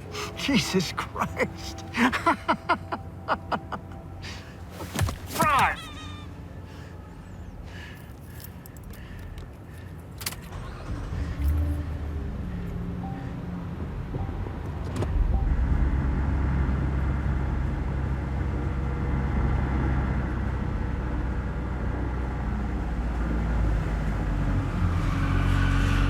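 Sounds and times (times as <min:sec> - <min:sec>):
road noise: 0:00.0 - 0:26.0
car engine: 0:10.2 - 0:14.2.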